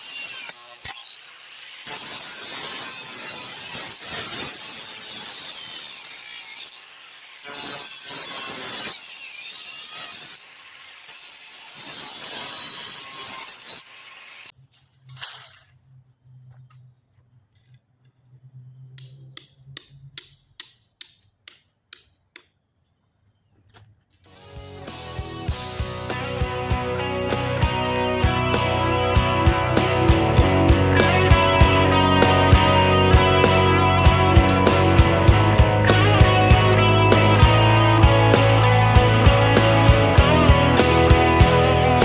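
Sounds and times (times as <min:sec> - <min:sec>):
tool cutting into wood: 0:00.0 - 0:14.5.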